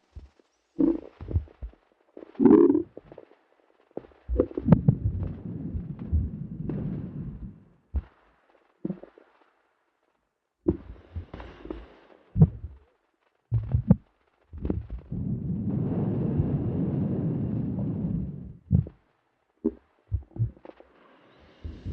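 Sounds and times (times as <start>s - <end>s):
heartbeat thumps: 0.2s - 1.8s, 4.3s - 8.2s, 8.9s - 9.1s, 10.7s - 12.8s, 13.5s - 15.5s, 18.4s - 19.0s, 19.7s - 20.7s, 21.6s - 21.9s
low body rumbling: 0.8s - 1.7s, 4.3s - 8.1s, 12.4s - 12.8s, 13.5s - 14.0s, 14.6s - 19.0s, 20.1s - 20.6s, 21.7s - 21.9s.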